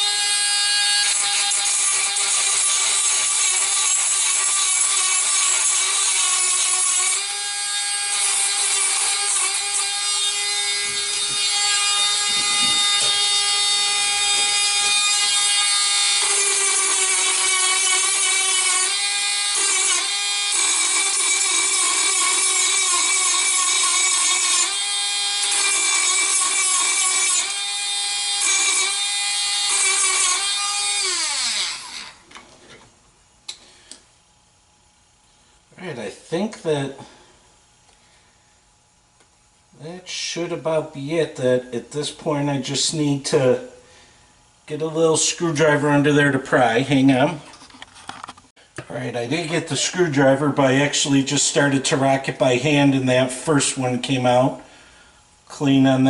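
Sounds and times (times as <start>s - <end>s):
rotary tool winding down: 0.0s - 32.2s
rotary tool grinding whine: 0.0s - 32.8s.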